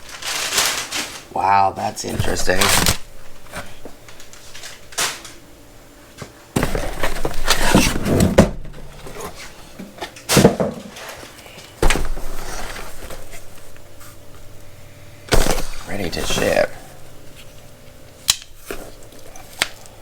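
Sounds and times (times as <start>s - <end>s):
cardboard packaging rustling: 0.0s - 5.4s, 15.3s - 17.8s.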